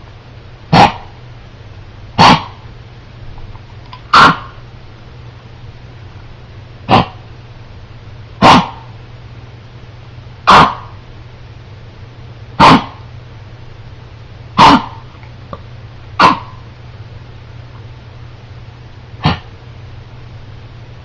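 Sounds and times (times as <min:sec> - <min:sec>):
dog coughing: 0:00.7 - 0:01.1, 0:02.2 - 0:02.6, 0:04.1 - 0:04.6, 0:06.9 - 0:07.2, 0:08.4 - 0:08.9, 0:10.4 - 0:11.0, 0:12.6 - 0:13.1, 0:14.6 - 0:15.1, 0:16.2 - 0:16.6, 0:19.2 - 0:19.5.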